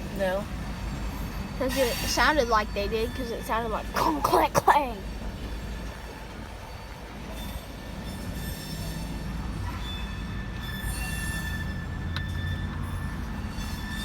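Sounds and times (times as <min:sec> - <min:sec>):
freight train wheels rumbling: 0:00.0 - 0:14.0
high metal squeal: 0:07.4 - 0:14.0.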